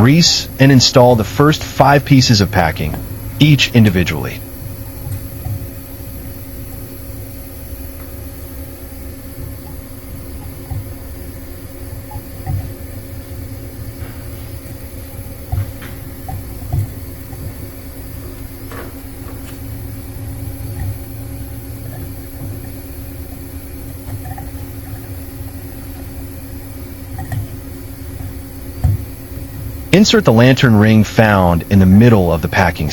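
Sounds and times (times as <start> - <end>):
faint high whine: 0.0 - 32.9
low mechanical hum: 0.0 - 32.9
small clicks and taps: 12.1 - 12.8, 15.5 - 17.6, 27.1 - 27.6.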